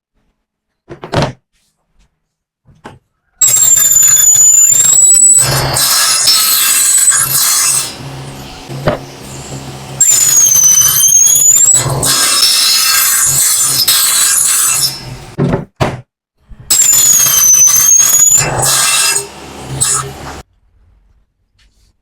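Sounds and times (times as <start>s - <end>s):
saw blade squeal: 3.4s - 8.0s, 10.0s - 15.2s, 16.7s - 20.1s
power saw cutting: 4.4s - 15.4s, 16.8s - 20.4s
saw motor hum: 4.6s - 15.4s, 16.8s - 20.4s.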